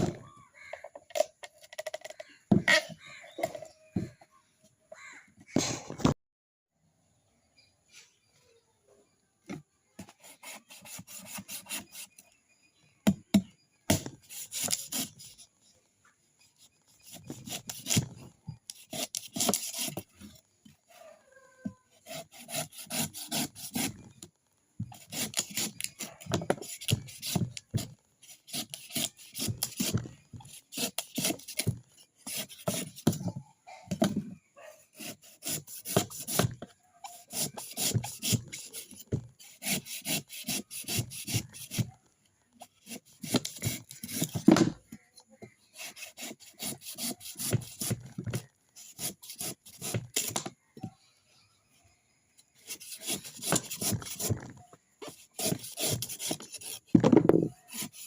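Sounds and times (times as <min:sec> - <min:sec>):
coconut being scraped by hand: 0:10.0 - 0:12.4, 0:13.2 - 0:15.5, 0:16.5 - 0:21.2, 0:21.8 - 0:24.2, 0:24.8 - 0:33.4, 0:34.6 - 0:50.4, 0:52.5 - 0:58.0.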